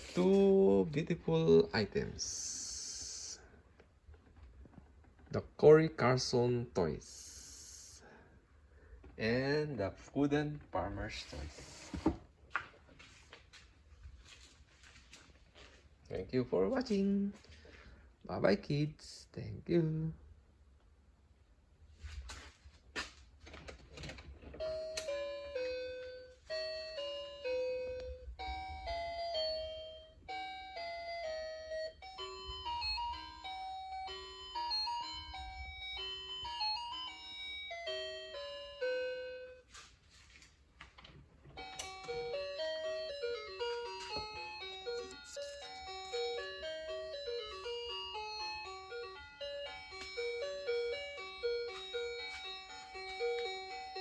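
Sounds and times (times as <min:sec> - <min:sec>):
tinny electronic bell melody: 0:24.6 - 0:39.8, 0:41.6 - 0:54.0.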